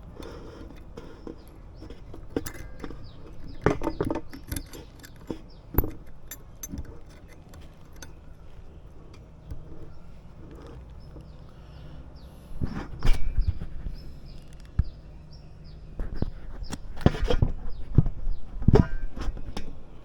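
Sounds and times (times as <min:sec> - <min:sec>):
metal tools clinking: 0:00.3 - 0:11.4.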